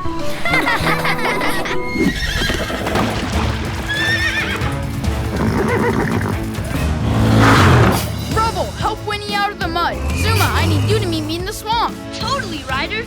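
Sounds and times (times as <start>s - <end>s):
background music: 0.0s - 13.0s
cartoon horse whinnying: 0.3s - 3.3s, 3.9s - 4.6s, 5.2s - 6.6s, 10.0s - 11.2s.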